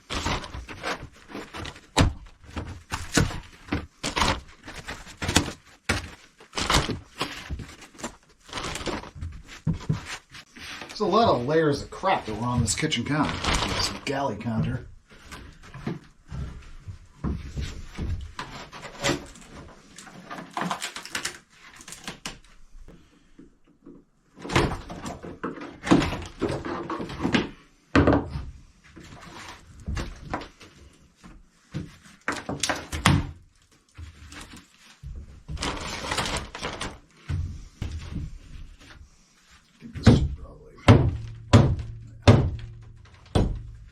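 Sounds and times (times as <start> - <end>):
counter material knocking and clattering: 40.0 - 43.9.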